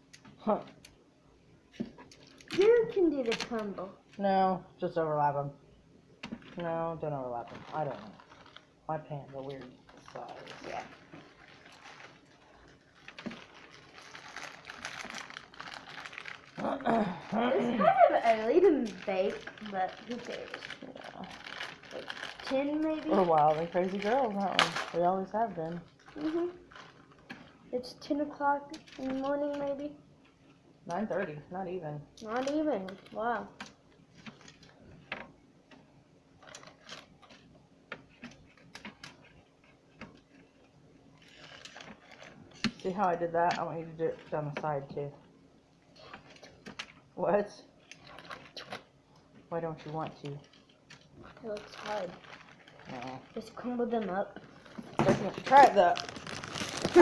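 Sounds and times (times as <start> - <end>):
crackers breaking and crackling: 7.4 - 17.6, 18.2 - 27.7, 50.1 - 57.0.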